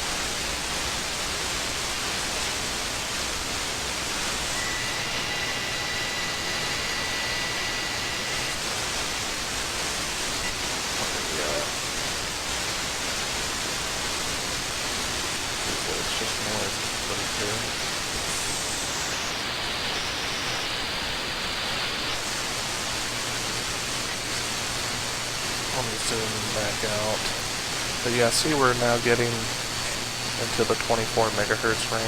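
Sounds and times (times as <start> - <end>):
radio static hiss: 0.0 - 32.0
faint high whistle: 4.5 - 8.5.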